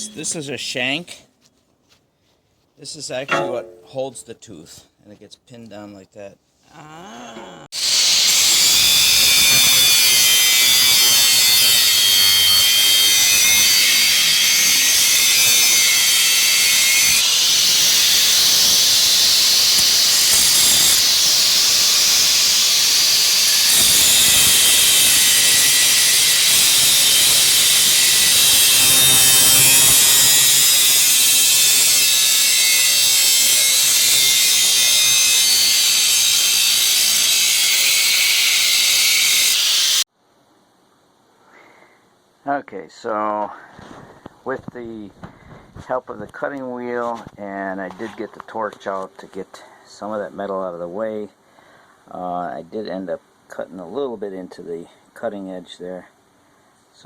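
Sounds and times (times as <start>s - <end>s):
angle grinder cutting steel: 3.3s - 4.1s, 7.8s - 40.0s.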